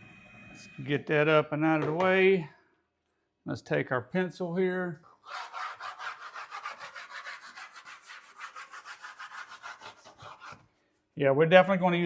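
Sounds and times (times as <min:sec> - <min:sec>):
pencil scribbling on board: 0:05.2 - 0:10.7.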